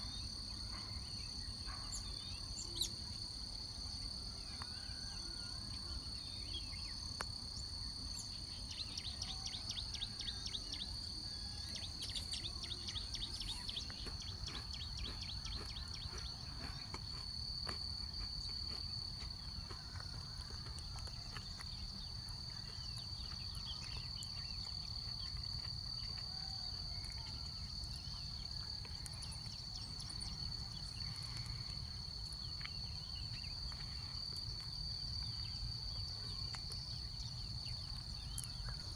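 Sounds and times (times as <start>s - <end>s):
insects droning: 0.0s - 38.9s
faint chirps: 7.6s - 17.0s.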